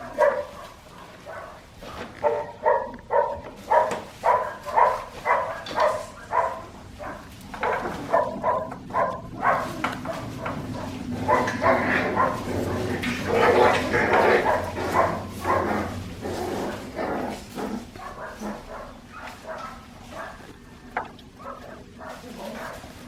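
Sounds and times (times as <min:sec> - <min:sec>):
puppies yipping: 0:00.0 - 0:22.9.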